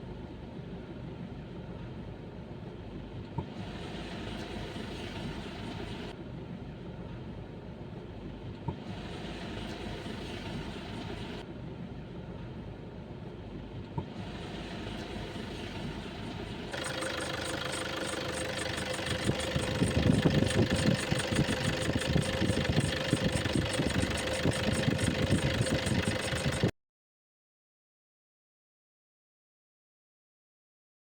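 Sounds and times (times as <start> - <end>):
alternator pulley whine: 14.2 - 26.7
car engine running: 14.2 - 26.7
rapid even ticking: 16.7 - 26.7.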